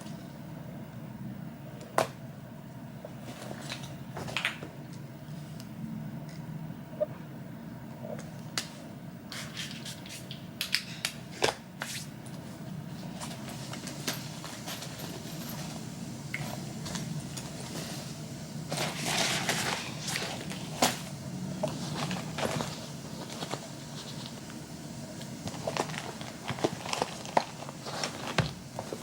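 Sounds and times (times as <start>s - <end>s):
steady low hum: 0.0s - 29.0s
rustling noise: 11.8s - 29.0s.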